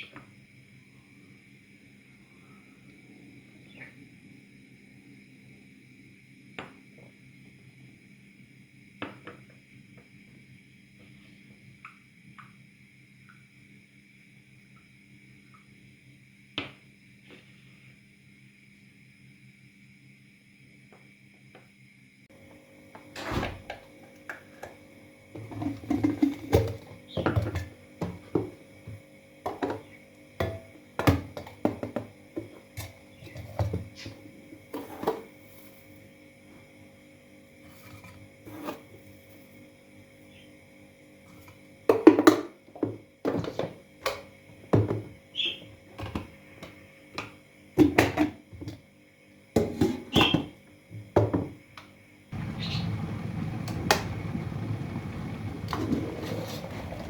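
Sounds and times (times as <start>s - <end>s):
faint steady hum: 0.0s - 57.0s
kitchen utensils and dishes clattering: 25.4s - 27.7s.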